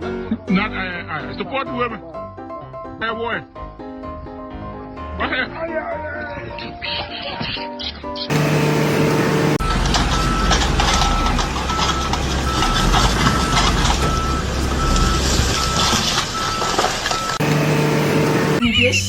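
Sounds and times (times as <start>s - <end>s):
back-up alarm beeping: 8.3s - 18.6s
heavy vehicle engine running: 8.3s - 19.0s.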